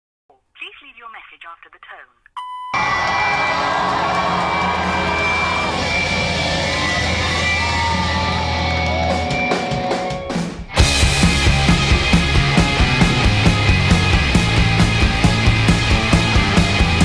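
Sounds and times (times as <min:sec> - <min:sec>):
answering machine beep: 0:00.6 - 0:02.8
rock music with distorted guitar: 0:04.3 - 0:17.0.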